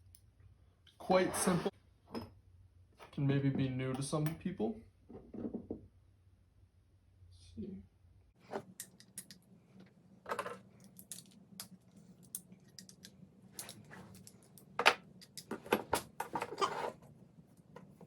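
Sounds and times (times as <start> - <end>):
metal parts and tools rattling: 10.3 - 17.0.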